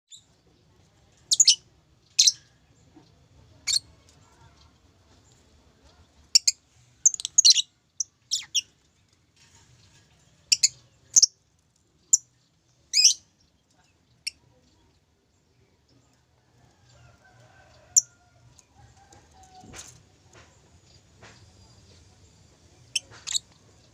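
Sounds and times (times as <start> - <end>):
lovebird chirping: 1.3 - 2.5, 6.3 - 8.7, 10.5 - 11.4, 12.0 - 13.3, 22.8 - 23.9.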